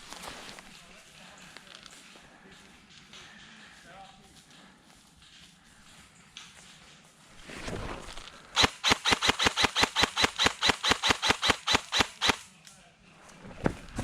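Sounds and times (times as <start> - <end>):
airsoft gun shots: 8.6 - 12.5.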